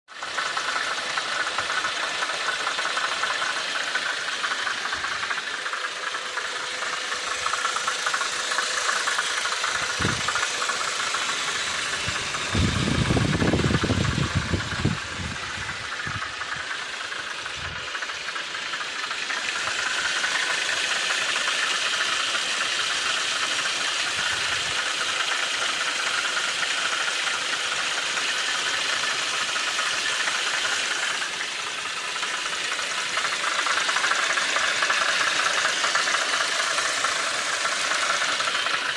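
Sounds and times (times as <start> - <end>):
car engine idling: 0.0 - 38.9
engine knocking: 0.0 - 38.9
low engine rumble: 0.2 - 38.9.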